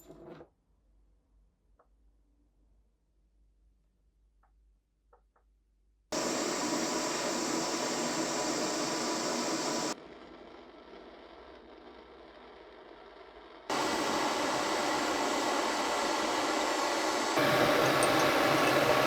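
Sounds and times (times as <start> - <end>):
workshop tool whirring: 13.7 - 19.0.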